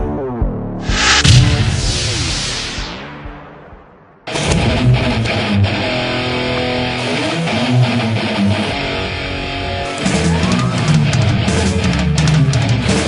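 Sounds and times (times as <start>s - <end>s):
guitar-led background music: 4.3s - 13.0s.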